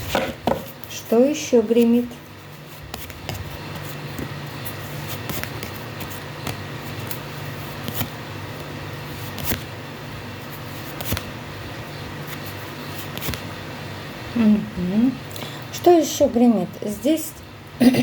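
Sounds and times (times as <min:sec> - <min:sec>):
steady low hum: 0:00.0 - 0:18.0
cards clicking and tapping: 0:02.9 - 0:08.2, 0:09.2 - 0:09.7, 0:10.8 - 0:11.3, 0:12.3 - 0:13.5.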